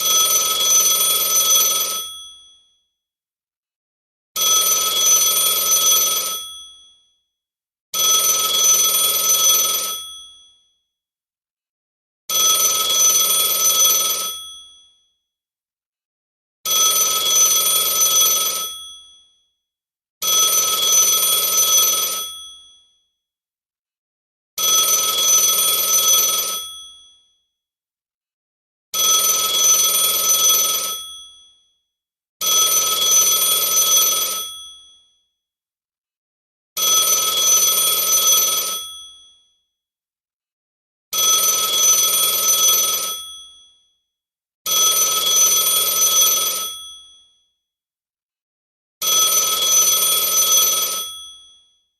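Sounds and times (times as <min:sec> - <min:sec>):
telephone ringing: 0:00.0 - 0:02.3, 0:04.4 - 0:06.7, 0:08.0 - 0:10.2, 0:12.4 - 0:14.6, 0:16.9 - 0:19.0, 0:24.7 - 0:26.9, 0:29.0 - 0:31.2, 0:32.5 - 0:34.7, 0:36.9 - 0:39.1, 0:41.4 - 0:43.4, 0:49.2 - 0:51.4.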